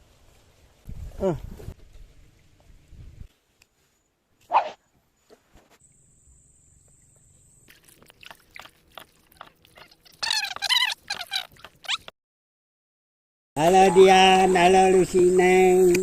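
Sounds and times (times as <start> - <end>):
animal calling: 8.6 - 12.1.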